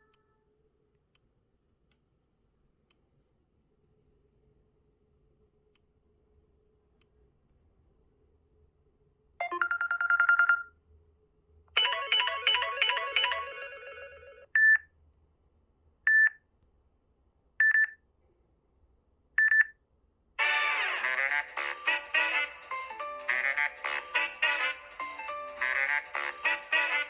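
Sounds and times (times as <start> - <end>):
rapid run of phone tones: 9.4 - 10.6.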